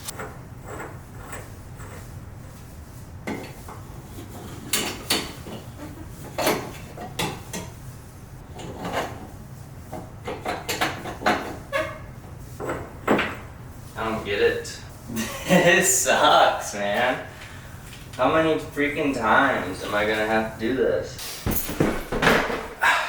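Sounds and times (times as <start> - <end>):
metal plumbing parts clinking: 21.2 - 22.8.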